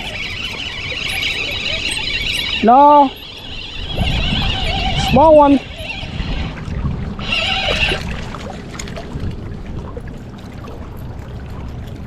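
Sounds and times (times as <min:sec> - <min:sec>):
high wavering squeal: 0:00.0 - 0:06.6, 0:07.2 - 0:08.0
water noise: 0:00.0 - 0:12.0
wind noise on microphone: 0:00.0 - 0:12.0.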